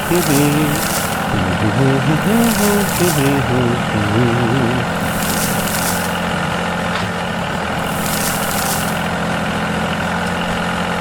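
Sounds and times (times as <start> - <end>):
short hisses: 0.0 - 6.4, 7.8 - 9.2
miniature vehicle engine drone: 0.0 - 11.0.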